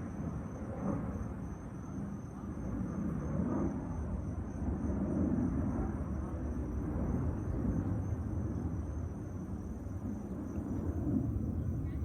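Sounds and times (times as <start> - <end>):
jet aircraft rumbling overhead: 0.0 - 12.0.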